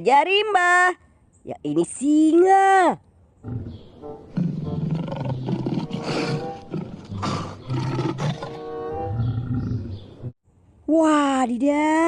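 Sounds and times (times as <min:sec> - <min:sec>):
background music: 0:03.4 - 0:10.3
lion roaring: 0:03.5 - 0:10.0.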